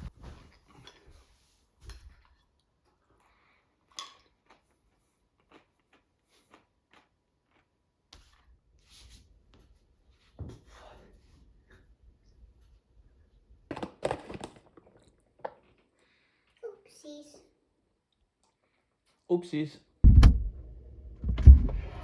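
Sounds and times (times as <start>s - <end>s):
low rumble: 20.0s - 22.0s.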